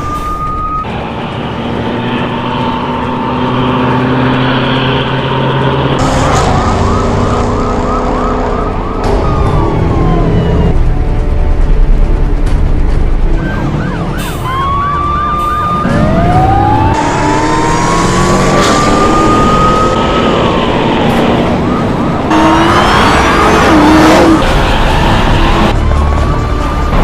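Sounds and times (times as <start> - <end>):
car engine and road noise: 0.0 - 27.0
police siren yelp and wail: 6.0 - 10.8, 13.2 - 27.0.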